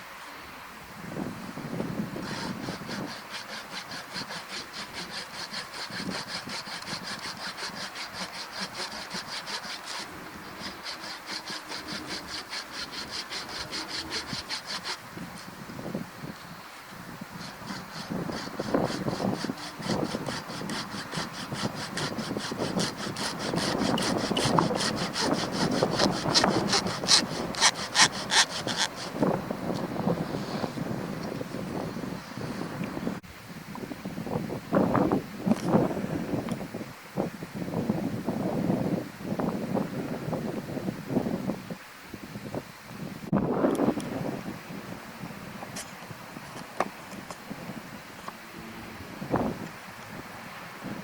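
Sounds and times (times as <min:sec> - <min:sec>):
hand saw cutting wood: 0:01.8 - 0:15.5, 0:17.3 - 0:30.9.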